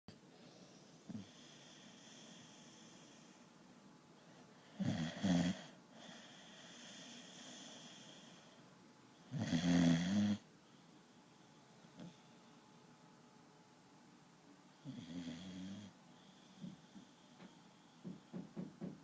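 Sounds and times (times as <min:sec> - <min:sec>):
dog snoring: 0:04.7 - 0:08.2, 0:09.3 - 0:10.4, 0:14.8 - 0:16.0.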